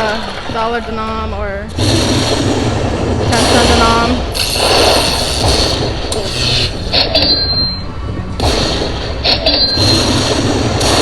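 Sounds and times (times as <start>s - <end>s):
sharp clicks: 1.9s - 7.8s.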